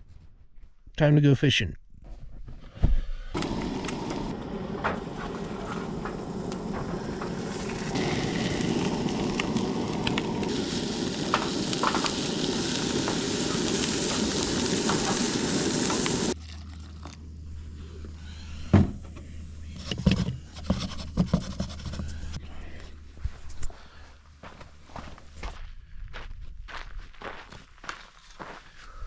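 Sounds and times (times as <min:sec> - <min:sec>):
food sizzling in a pan: 0:07.3 - 0:16.4.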